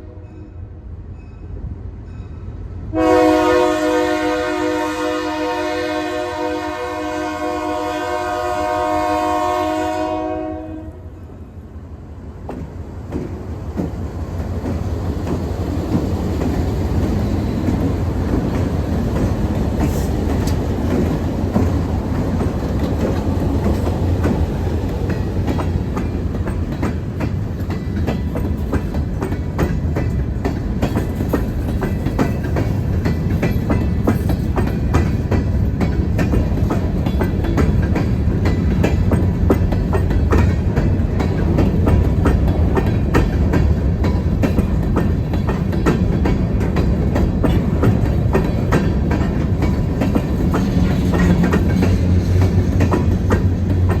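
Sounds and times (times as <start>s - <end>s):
train rumbling past: 0.0s - 54.0s
locomotive air horn chord: 2.9s - 11.1s
wheels clacking over rail joints: 12.4s - 54.0s.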